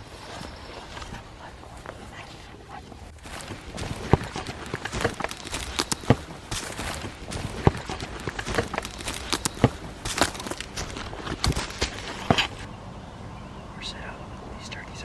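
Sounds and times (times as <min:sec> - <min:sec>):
footsteps crunching dry leaves: 0:03.2 - 0:12.7.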